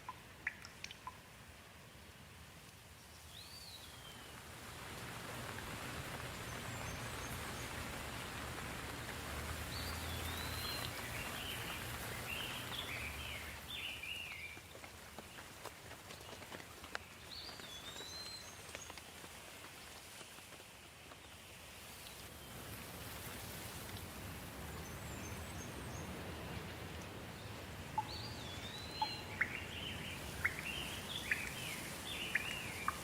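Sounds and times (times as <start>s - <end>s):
water drips: 0.0s - 1.7s, 2.6s - 20.1s, 21.8s - 33.0s
rain falling: 0.0s - 33.0s
songbird warbling: 27.9s - 33.0s.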